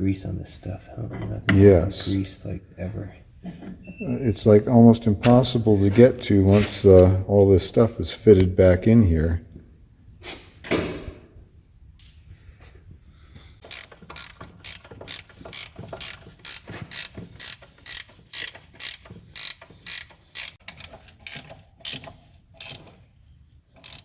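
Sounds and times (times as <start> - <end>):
hand tool metallic clicks: 23.8 - 24.0.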